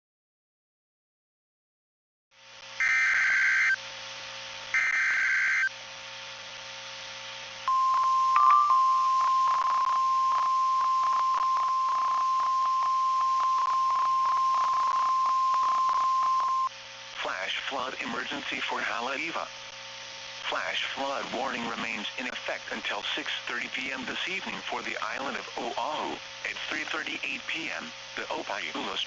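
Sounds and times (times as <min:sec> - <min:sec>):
steady alarm tone: 0:02.8 - 0:03.8, 0:04.7 - 0:05.7, 0:07.7 - 0:16.7
radio hiss and crackle: 0:09.1 - 0:29.0.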